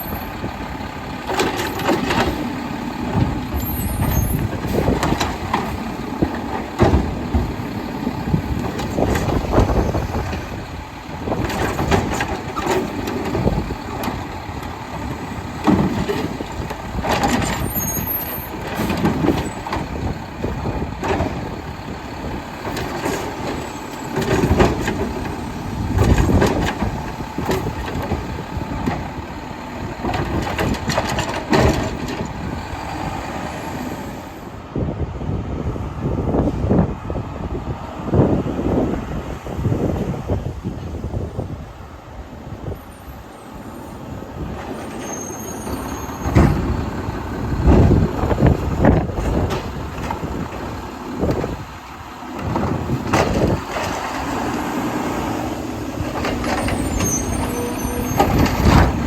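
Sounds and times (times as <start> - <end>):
garbage truck engine running: 0.0 - 59.0
bangs of automated arm handling carts: 1.1 - 10.6, 22.4 - 33.1, 44.4 - 59.0
air brakes hissing: 42.9 - 46.6.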